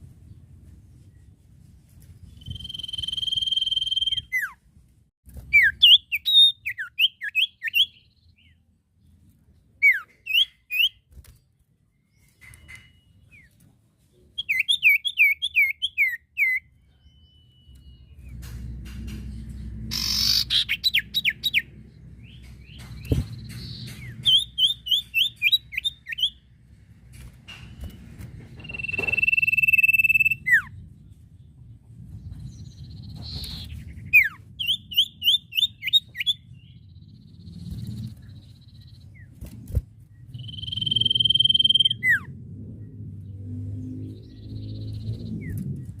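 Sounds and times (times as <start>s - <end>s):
bird singing whistled notes: 2.2s - 4.6s, 5.5s - 8.6s, 9.8s - 11.1s, 14.4s - 18.4s, 19.9s - 26.4s, 28.6s - 30.8s, 32.4s - 39.3s, 40.1s - 42.3s
low rumble: 30.4s - 35.5s, 41.9s - 46.0s.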